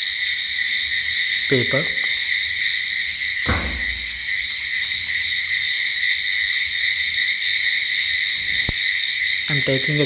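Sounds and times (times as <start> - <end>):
insects trilling: 0.0 - 10.0
soft low thump: 3.5 - 4.5.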